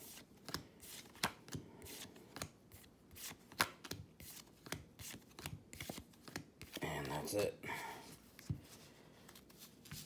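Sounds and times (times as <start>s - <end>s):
trading cards flicking and sliding: 3.2s - 6.8s.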